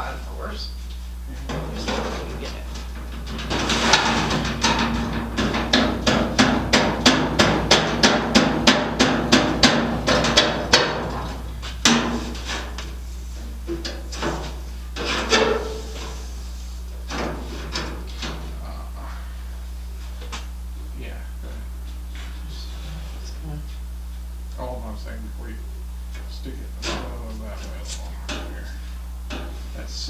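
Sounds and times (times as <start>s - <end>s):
rapid hammer strikes: 3.5s - 12.6s
scattered knocks: 3.5s - 12.6s.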